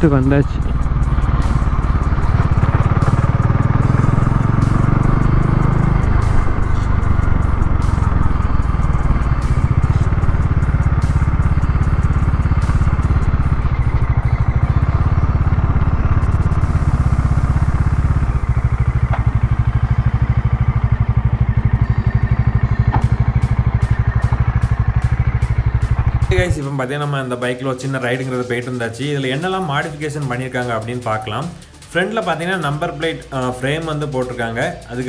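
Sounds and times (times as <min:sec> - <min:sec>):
motorcycle engine running: 0:00.0 - 0:35.0.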